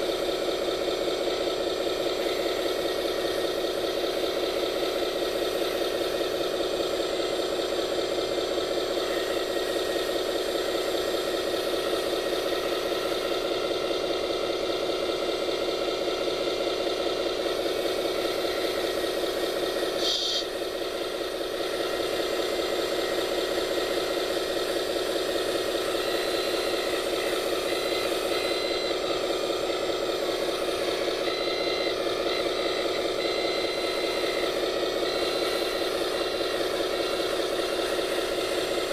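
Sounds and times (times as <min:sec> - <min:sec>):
toy construction machine humming: 0:00.0 - 0:38.9
short high squeak: 0:20.0 - 0:20.5.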